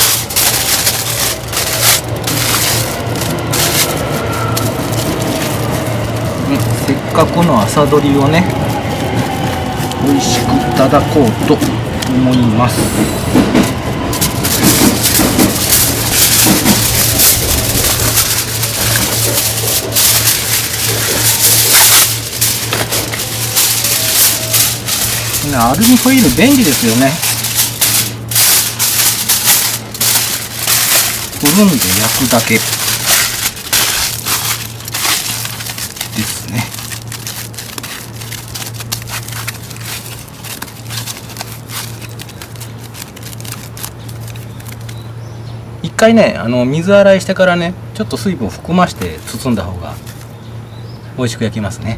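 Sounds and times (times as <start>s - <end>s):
aluminium foil crinkling: 0.0s - 45.4s, 48.1s - 50.4s
steady low hum: 0.0s - 51.9s.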